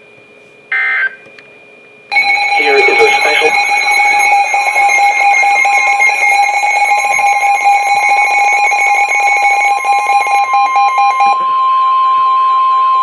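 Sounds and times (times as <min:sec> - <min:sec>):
weather radio alert alarm: 0:02.1 - 0:11.8
steady warning tone: 0:02.1 - 0:13.0.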